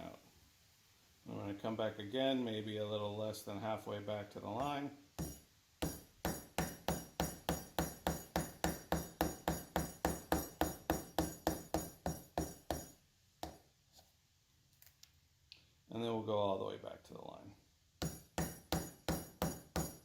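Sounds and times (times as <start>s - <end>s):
chisel tapping on wood: 5.2s - 13.6s, 18.0s - 20.0s.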